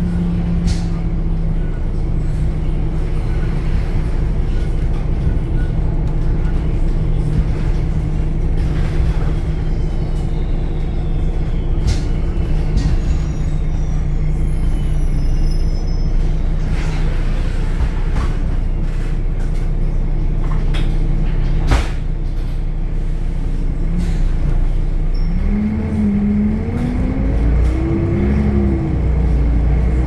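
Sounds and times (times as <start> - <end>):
bus diesel engine droning: 0.0 - 30.0
faint high whistles: 9.8 - 16.5.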